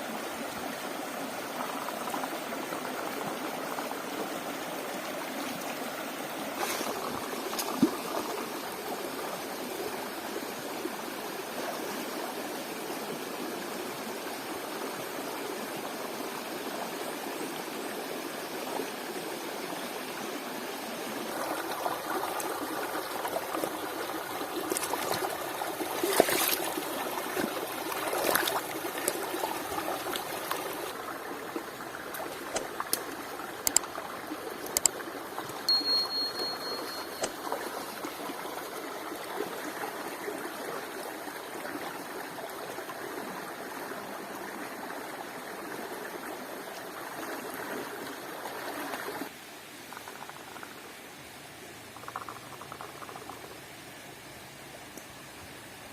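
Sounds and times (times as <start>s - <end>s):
stream water trickling: 0.0s - 55.9s
sharp clicks: 34.6s - 35.6s.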